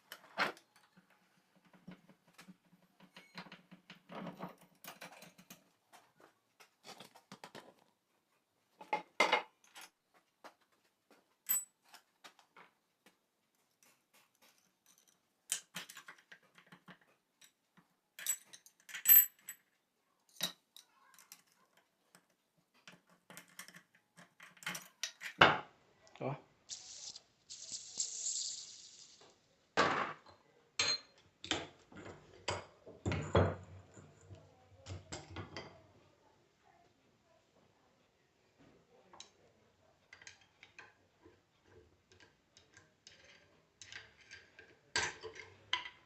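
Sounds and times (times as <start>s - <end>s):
metal parts and tools clinking: 11.4s - 12.1s, 13.6s - 25.4s.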